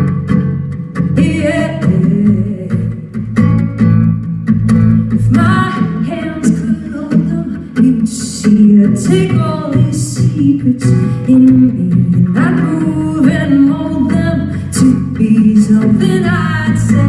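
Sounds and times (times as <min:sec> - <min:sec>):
guitar: 0:00.0 - 0:17.0
live pop band: 0:00.0 - 0:17.0
woman singing: 0:01.0 - 0:03.4, 0:05.0 - 0:17.0.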